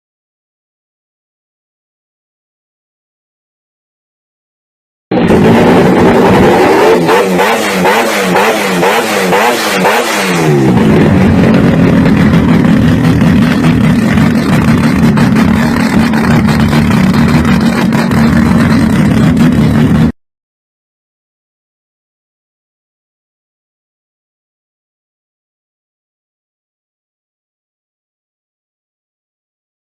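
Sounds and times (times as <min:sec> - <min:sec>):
rotary engine revving: 0:05.1 - 0:20.1.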